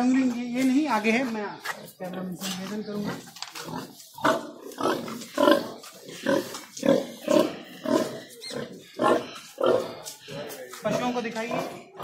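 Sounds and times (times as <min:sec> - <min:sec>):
pigs grunting: 0:02.9 - 0:12.0.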